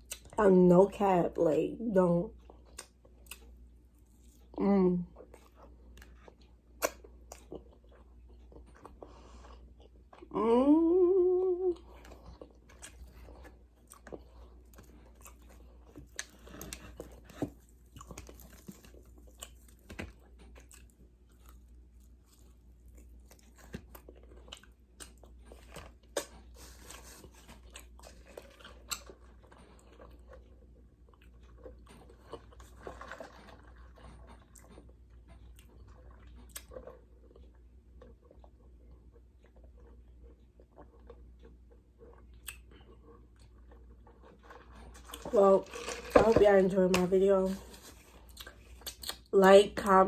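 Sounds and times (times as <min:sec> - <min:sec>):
person chewing and crunching: 0:00.0 - 0:01.2, 0:01.9 - 0:10.5, 0:11.2 - 0:50.0.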